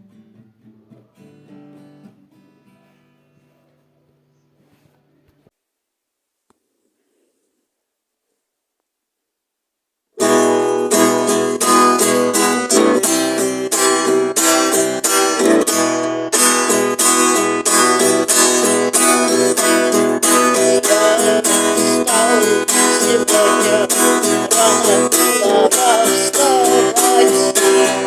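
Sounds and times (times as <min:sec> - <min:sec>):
guitar chords strummed: 0:10.2 - 0:28.0.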